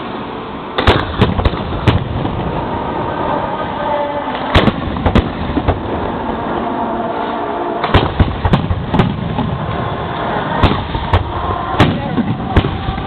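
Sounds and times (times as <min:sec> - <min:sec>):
steady background noise: 0:00.0 - 0:13.0
firework shells bursting: 0:00.8 - 0:02.6, 0:04.3 - 0:06.2, 0:07.8 - 0:13.0.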